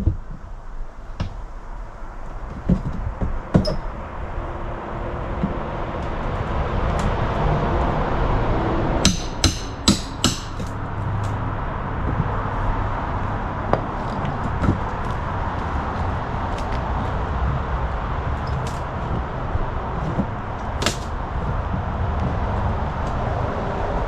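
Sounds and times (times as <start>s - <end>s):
background noise: 0.0s - 24.0s
hammer blows on wood: 9.0s - 10.8s.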